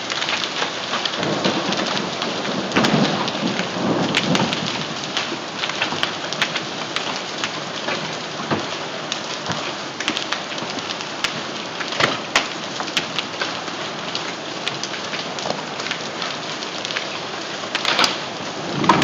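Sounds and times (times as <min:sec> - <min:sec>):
hail and rain pelting: 0:00.0 - 0:19.0
low rumble of thunder: 0:01.2 - 0:06.5, 0:18.0 - 0:19.0.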